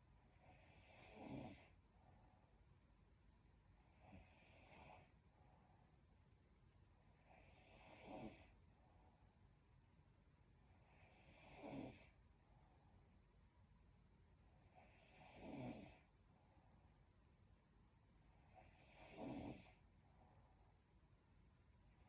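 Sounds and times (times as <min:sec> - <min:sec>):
woman snoring faintly: 0:00.4 - 0:01.8, 0:07.2 - 0:08.6, 0:10.9 - 0:12.2, 0:14.7 - 0:16.1, 0:18.4 - 0:19.8.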